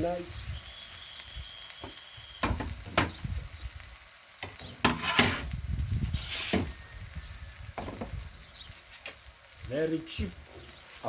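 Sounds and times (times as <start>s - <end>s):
food sizzling in a pan: 0.0s - 11.0s
spatula scraping a pan: 4.4s - 6.8s.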